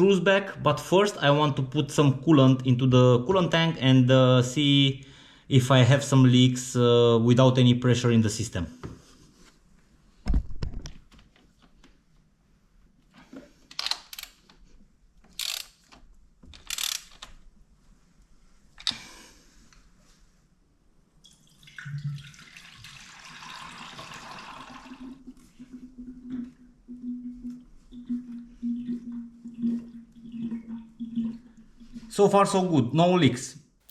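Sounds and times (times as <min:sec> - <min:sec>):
liquid pouring from bottle: 0:21.2 - 0:32.2.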